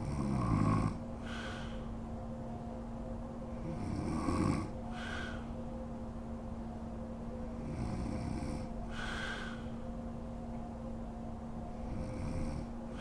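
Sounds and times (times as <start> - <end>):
woman snoring: 0.0 - 1.0
breathy exhale: 1.2 - 2.0, 4.9 - 5.6, 8.9 - 9.9.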